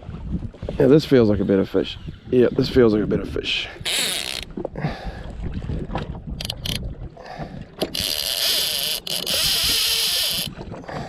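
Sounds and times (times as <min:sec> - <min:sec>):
fishing reel drag buzzing: 0:03.9 - 0:04.5, 0:07.9 - 0:10.5.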